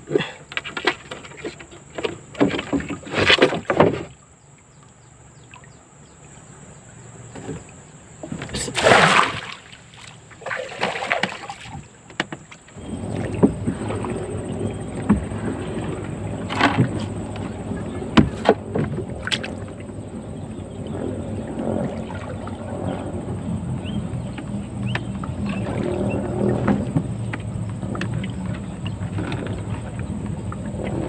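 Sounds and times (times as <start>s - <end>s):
water splashing: 7.4s - 31.0s
steady low noise: 12.8s - 31.0s.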